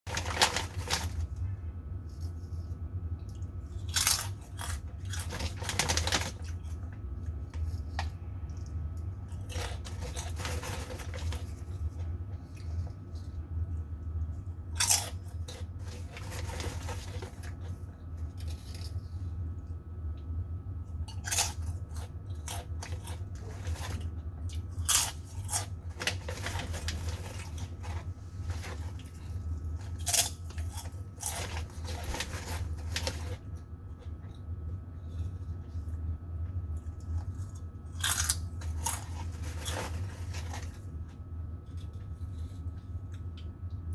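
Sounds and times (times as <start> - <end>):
crunching and chewing crisps: 0.1 - 1.5, 3.2 - 19.7, 21.0 - 43.5.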